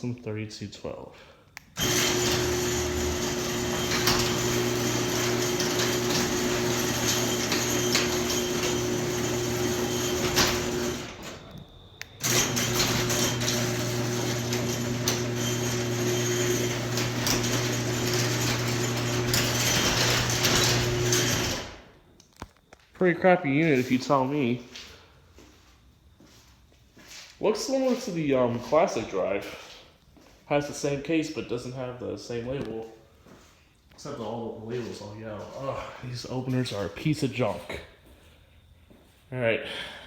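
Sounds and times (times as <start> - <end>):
garage door opener motor hum: 1.8 - 22.0.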